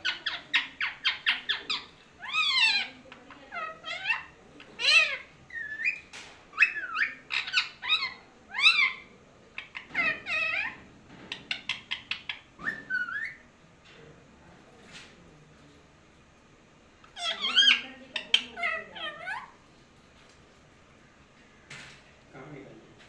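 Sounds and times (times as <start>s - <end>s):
parrot chirps: 0.0s - 13.5s, 17.0s - 19.7s.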